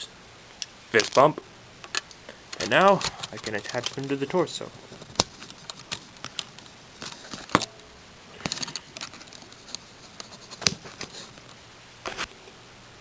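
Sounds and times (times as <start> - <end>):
plastic pieces clicking and rattling: 1.0 - 1.3, 1.9 - 4.4.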